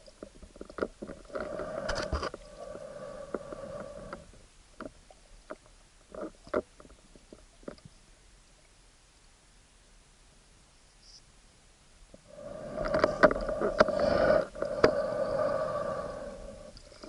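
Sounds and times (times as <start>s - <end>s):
muffled underwater clicks and knocks: 0.0s - 2.4s, 4.8s - 8.0s, 12.7s - 14.0s
steady underwater drone: 0.1s - 6.6s, 12.1s - 17.0s.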